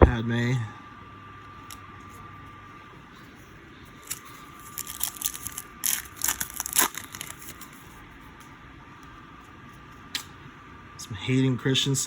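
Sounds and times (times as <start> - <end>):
trading cards sliding and scraping: 3.1 - 8.5.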